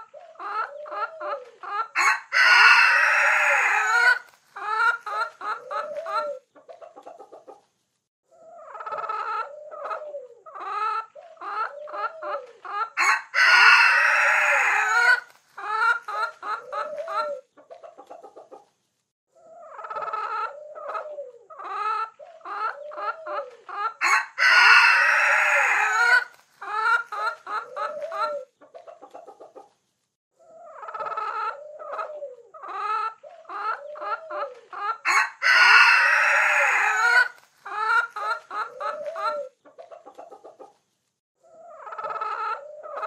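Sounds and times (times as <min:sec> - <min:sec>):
hens clucking: 0:00.0 - 0:07.7, 0:08.3 - 0:18.8, 0:19.4 - 0:29.8, 0:30.4 - 0:40.8, 0:41.4 - 0:43.0
rooster crowing: 0:02.0 - 0:04.2, 0:13.0 - 0:15.3, 0:24.0 - 0:26.3, 0:35.0 - 0:37.4.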